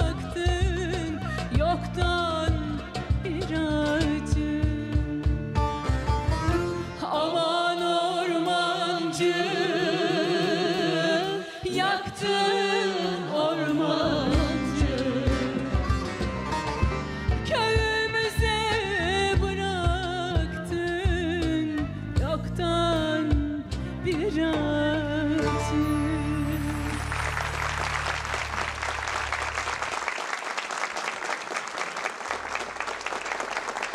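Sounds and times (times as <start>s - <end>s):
person singing with vibrato: 0.0s - 5.6s, 7.0s - 16.1s, 17.4s - 27.2s
folk band playing: 0.0s - 29.6s
audience applauding: 26.6s - 33.9s.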